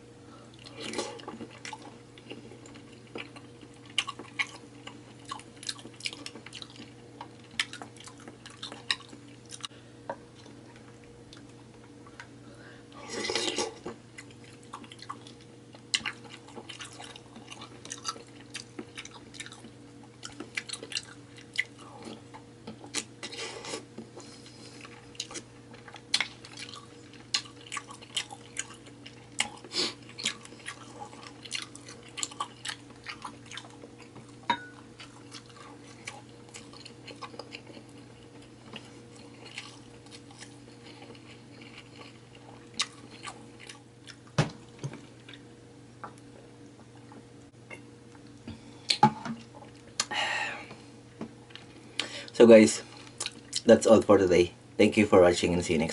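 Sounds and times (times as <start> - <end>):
faint steady hum: 0.0 - 55.9
chewing and wet smacks: 0.5 - 9.7, 10.3 - 12.3, 13.2 - 45.5, 52.9 - 53.7.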